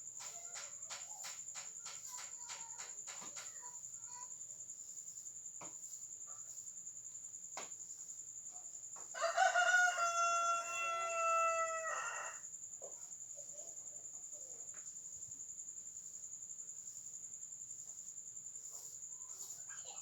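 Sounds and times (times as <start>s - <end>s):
crickets trilling: 0.0s - 20.0s
rooster crowing: 9.1s - 12.5s.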